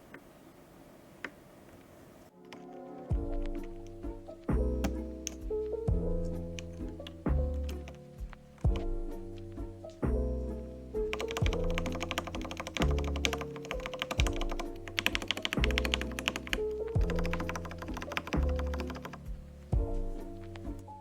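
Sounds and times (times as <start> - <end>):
background music: 2.2 - 21.0
mechanical keyboard clacking: 11.1 - 19.2.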